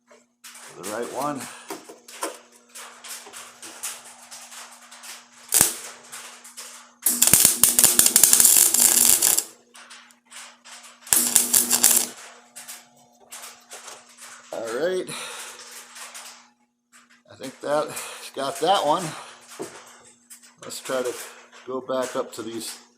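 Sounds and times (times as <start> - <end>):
electric welder arc crackling: 2.8 - 15.0.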